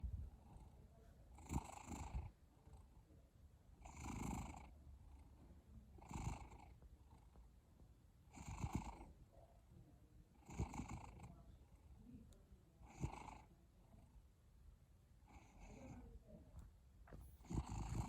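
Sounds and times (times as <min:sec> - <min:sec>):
cat snoring: 0:01.4 - 0:02.8, 0:03.8 - 0:05.3, 0:06.0 - 0:07.4, 0:08.3 - 0:09.1, 0:10.4 - 0:11.3, 0:12.8 - 0:13.5, 0:15.3 - 0:16.0, 0:17.2 - 0:18.0.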